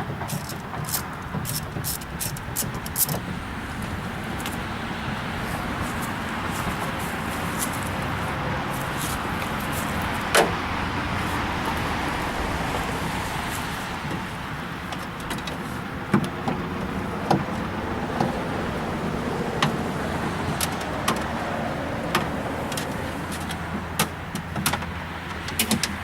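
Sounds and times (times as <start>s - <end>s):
steady background noise: 0.0s - 26.0s
car door latch clicks and knocks: 9.4s - 10.6s, 14.1s - 18.7s, 19.5s - 26.0s.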